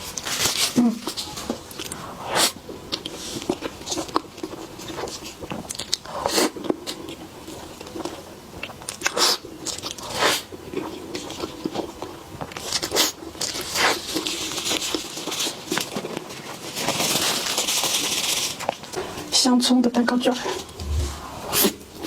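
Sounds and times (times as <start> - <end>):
biting and chewing: 2.8 - 18.0.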